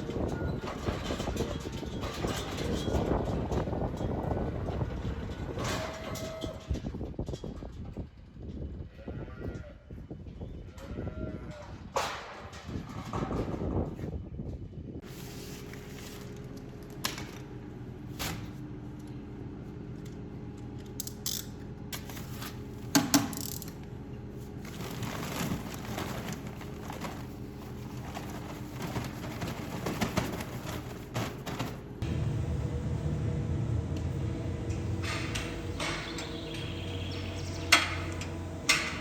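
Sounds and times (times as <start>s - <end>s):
machine hum: 15.8s - 39.0s
knocks and clanks: 24.7s - 39.0s.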